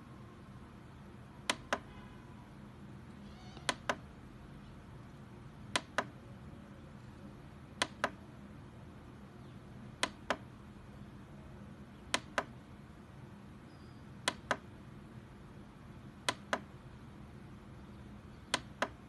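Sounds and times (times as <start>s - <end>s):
faint steady hum: 0.0s - 19.0s
sharp double clicks: 5.7s - 6.1s, 10.0s - 10.4s, 12.1s - 12.5s, 14.2s - 14.6s, 16.2s - 16.7s, 18.5s - 19.0s.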